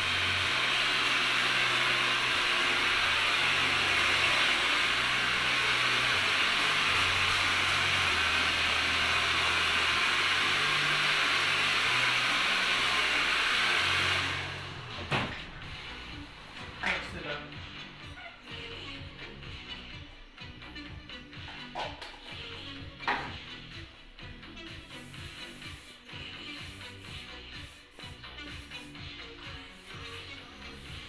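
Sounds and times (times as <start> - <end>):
hair dryer blowing: 0.0 - 17.4, 20.9 - 31.0.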